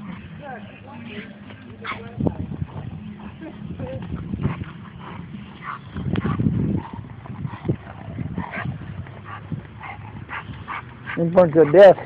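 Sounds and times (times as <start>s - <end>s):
dog sounds: 4.4s - 12.0s.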